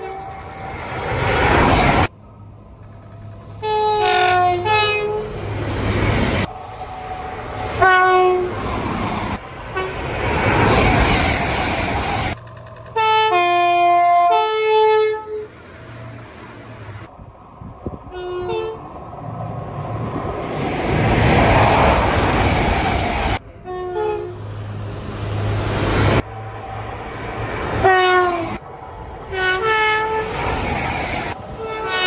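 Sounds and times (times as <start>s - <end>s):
train rumble: 0.0s - 32.0s
diesel train horn blasts: 3.6s - 5.4s, 7.8s - 8.6s, 9.7s - 10.0s, 13.0s - 15.6s, 18.0s - 18.8s, 23.6s - 24.4s, 27.8s - 28.6s, 29.3s - 30.4s, 31.5s - 32.0s.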